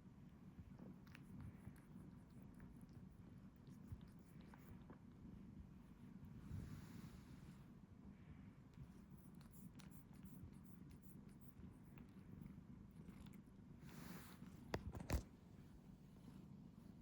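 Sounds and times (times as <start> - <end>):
cat purring: 8.8 - 15.2
soft rustle: 11.9 - 17.0.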